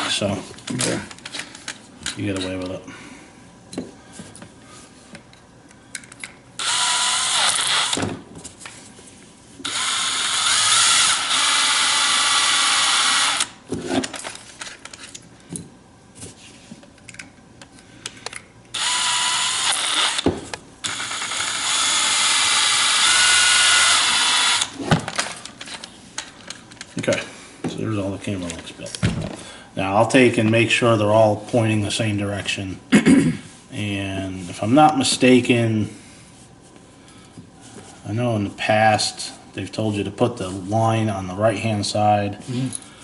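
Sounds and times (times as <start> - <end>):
light clicks of handling parts: 5.1 - 6.4
power drill running: 6.6 - 8.0, 9.6 - 13.6, 18.7 - 24.8.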